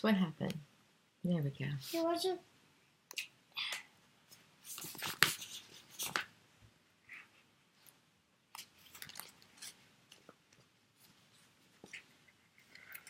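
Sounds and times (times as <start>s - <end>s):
paper rustling: 4.6s - 6.3s, 8.5s - 10.4s.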